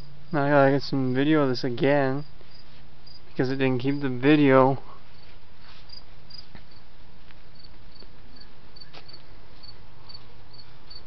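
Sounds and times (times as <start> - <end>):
cricket chirping: 0.0 - 1.3, 2.1 - 3.2, 7.6 - 11.0.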